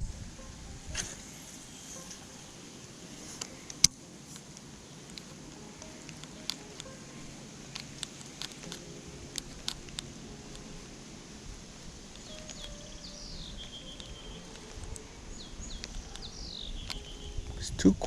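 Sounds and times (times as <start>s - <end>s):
small bird singing: 0.0s - 17.8s
creek flowing: 0.0s - 18.0s
sharp clicks: 3.4s - 17.6s.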